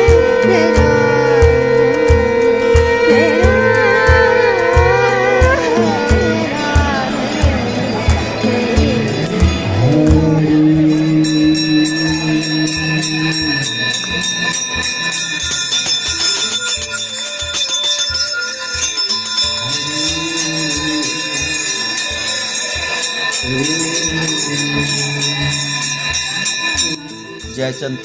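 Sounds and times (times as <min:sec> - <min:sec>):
person singing a hymn: 0:00.0 - 0:13.9
steady beat: 0:00.0 - 0:27.7
bells ringing: 0:00.0 - 0:28.0.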